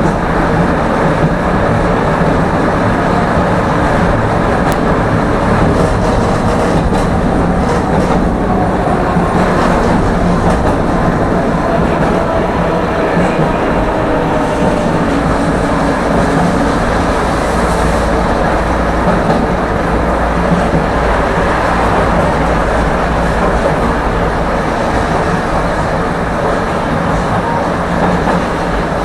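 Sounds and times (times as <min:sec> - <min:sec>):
tram rolling and motor noise: 0:00.0 - 0:29.0.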